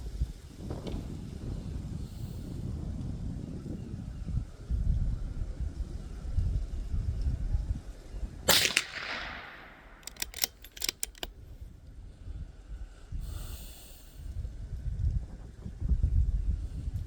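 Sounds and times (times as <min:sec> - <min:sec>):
rifle bolt clicks: 0:08.5 - 0:11.3
rifle shot crack: 0:08.5 - 0:11.3.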